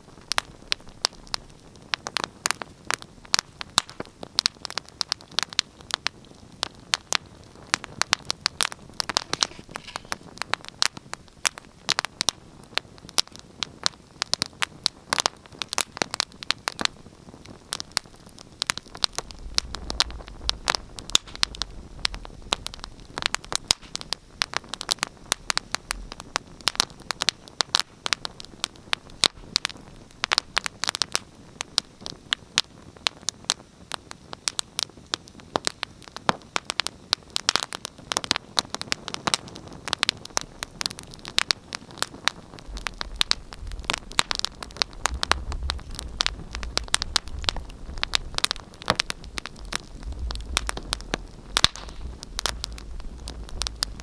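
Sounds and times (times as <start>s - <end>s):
fireplace fire crackling: 0.0s - 54.0s
low rumble: 42.6s - 54.0s.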